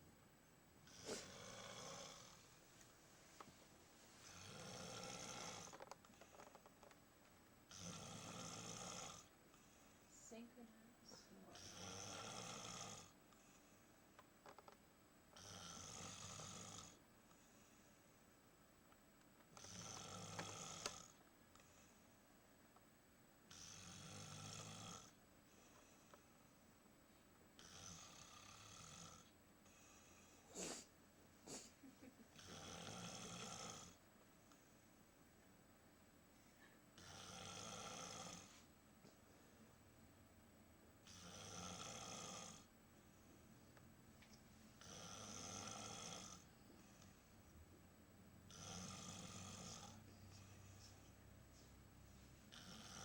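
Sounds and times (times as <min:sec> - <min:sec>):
slow snoring: 0:00.8 - 0:02.5, 0:04.2 - 0:06.6, 0:07.7 - 0:10.0, 0:11.5 - 0:13.9, 0:15.4 - 0:17.8, 0:19.5 - 0:22.0, 0:23.5 - 0:26.3, 0:27.6 - 0:30.9, 0:32.4 - 0:34.0, 0:37.0 - 0:38.7, 0:41.0 - 0:42.7, 0:44.8 - 0:47.3, 0:48.5 - 0:51.2, 0:52.5 - 0:53.0
short sharp snorts: 0:00.9 - 0:01.5, 0:30.5 - 0:31.8.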